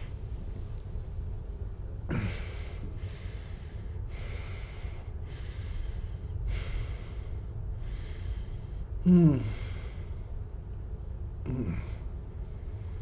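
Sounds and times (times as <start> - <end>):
man breathing hard: 2.0 - 10.7
man groaning: 9.0 - 9.6, 11.4 - 12.0.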